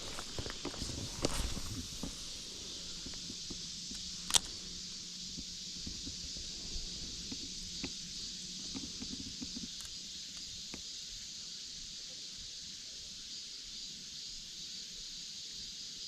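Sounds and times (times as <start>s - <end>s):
clicks and rustles of handling gear: 0.0s - 4.6s
insects chorus: 0.0s - 16.0s.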